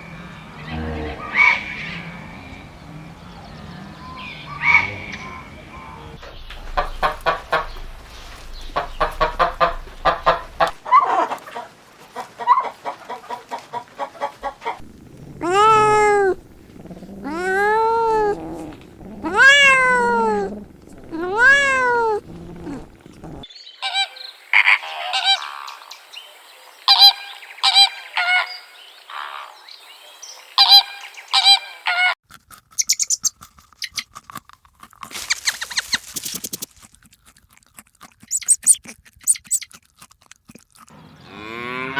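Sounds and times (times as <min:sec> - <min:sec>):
farm animals calling: 0:00.0 - 0:07.9, 0:12.2 - 0:23.5, 0:38.3 - 0:39.7.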